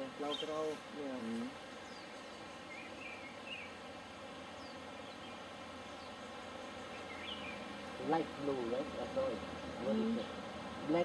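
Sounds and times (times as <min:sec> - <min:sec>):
steady background hiss: 0:00.0 - 0:11.0
faint bird chirps: 0:01.8 - 0:03.8, 0:04.6 - 0:07.8.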